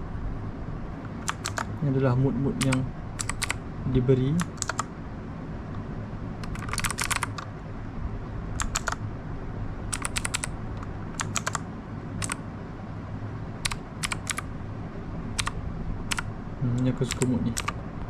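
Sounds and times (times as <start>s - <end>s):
steady low hum: 0.0s - 18.0s
mechanical keyboard key clicks: 1.2s - 1.7s, 2.6s - 3.6s, 4.4s - 4.9s, 6.4s - 7.5s, 8.6s - 9.0s, 9.9s - 10.5s, 11.2s - 11.6s, 12.2s - 12.4s, 13.6s - 14.4s, 15.4s - 17.8s.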